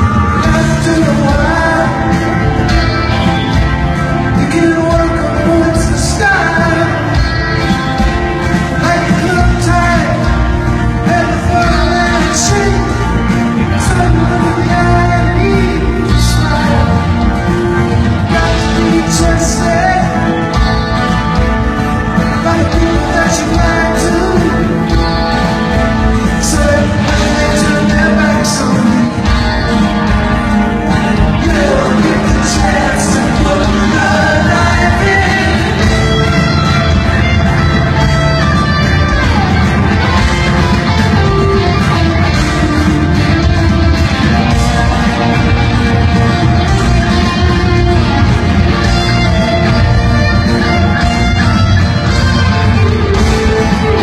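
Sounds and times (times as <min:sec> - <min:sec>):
person singing: 0:00.0 - 0:07.8, 0:08.5 - 0:21.2, 0:22.0 - 0:25.1, 0:26.0 - 0:29.9, 0:30.9 - 0:40.5
rock band playing live: 0:00.0 - 0:54.0.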